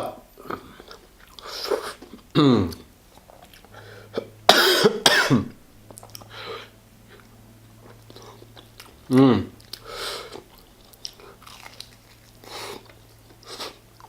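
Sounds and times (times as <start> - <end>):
man clearing his throat: 4.1 - 5.6
man coughing: 4.1 - 5.6.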